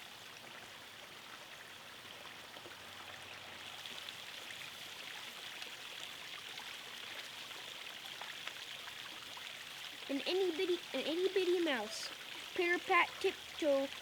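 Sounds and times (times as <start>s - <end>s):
background hiss: 9.1s - 14.0s.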